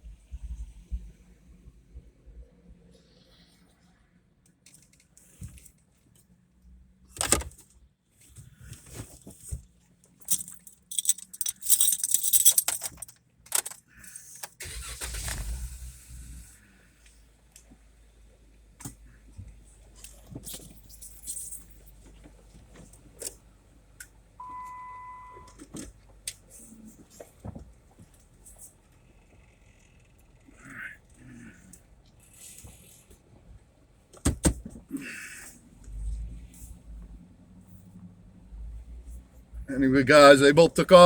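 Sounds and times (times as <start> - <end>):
handling clicks and knocks: 10.2 - 13.9
keys jangling: 10.2 - 14.6
car engine starting and idling: 14.5 - 20.8.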